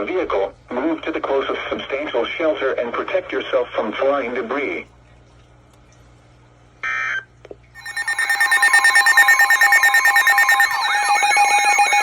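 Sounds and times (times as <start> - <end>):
pulsing alarm ring: 7.8 - 12.0
short beep: 7.8 - 12.0
sweeping siren: 7.8 - 12.0.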